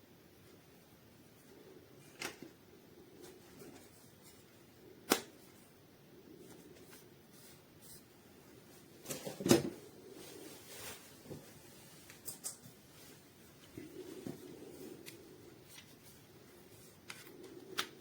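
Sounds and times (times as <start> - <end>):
faint room hiss: 0.0 - 18.0.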